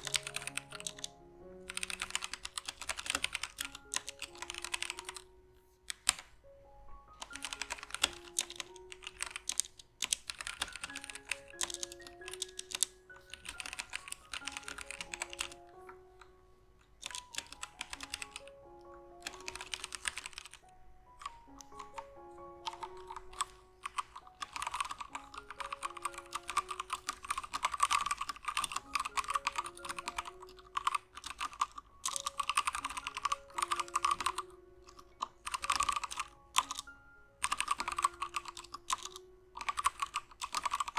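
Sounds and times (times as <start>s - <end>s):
mechanical keyboard typing: 0.0s - 40.9s
soft background music: 0.0s - 40.9s.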